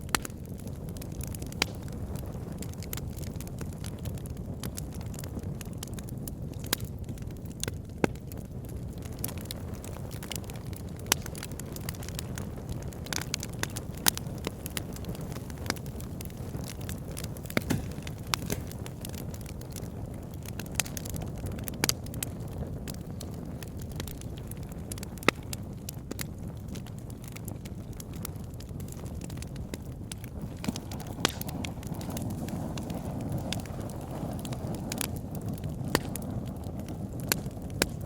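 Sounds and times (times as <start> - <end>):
fire crackling in fireplace: 0.0 - 38.0.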